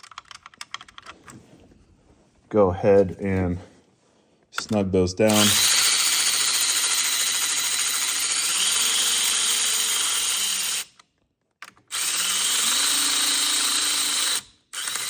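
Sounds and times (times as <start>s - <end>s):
power driver running: 4.6s - 11.0s, 11.6s - 15.0s.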